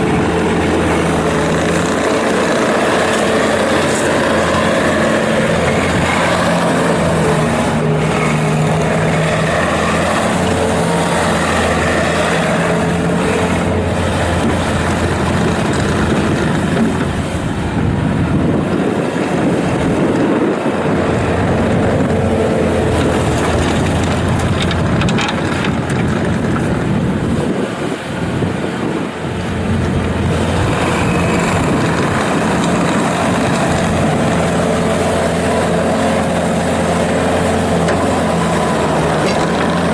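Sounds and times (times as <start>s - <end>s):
loud diesel engine running: 0.0s - 39.9s.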